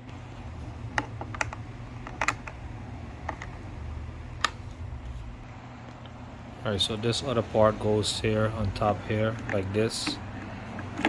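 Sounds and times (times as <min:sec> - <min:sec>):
low steady hum: 0:00.0 - 0:11.0
plastic parts clicking: 0:01.0 - 0:02.6, 0:03.2 - 0:03.5.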